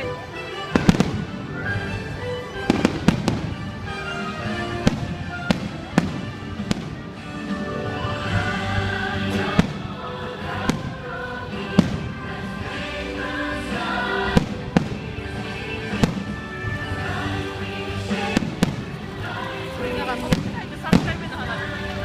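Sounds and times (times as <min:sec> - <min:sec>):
music from loudspeakers: 0:00.0 - 0:22.0
fireworks bursting in sharp bangs: 0:00.7 - 0:01.4, 0:02.7 - 0:03.9, 0:04.6 - 0:07.1, 0:09.2 - 0:12.7, 0:14.2 - 0:16.8, 0:18.0 - 0:19.0, 0:20.3 - 0:21.3.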